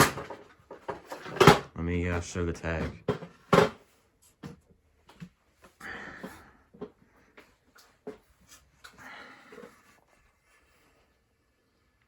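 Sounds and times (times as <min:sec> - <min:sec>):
handling clicks and knocks: 0:00.0 - 0:03.8.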